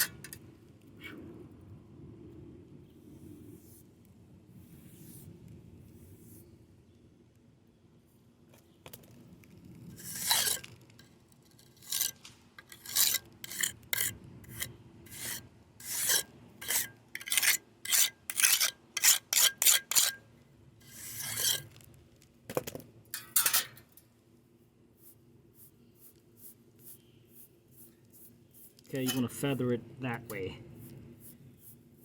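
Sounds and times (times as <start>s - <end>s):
hand tool scraping concrete: 10.0s - 10.8s, 11.6s - 20.2s, 20.8s - 21.8s, 28.7s - 29.6s.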